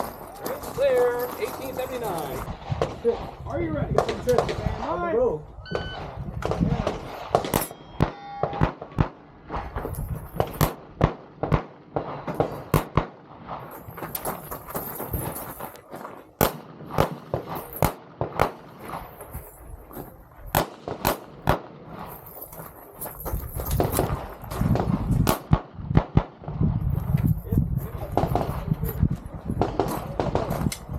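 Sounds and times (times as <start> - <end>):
handgun shots: 7.3 - 9.2.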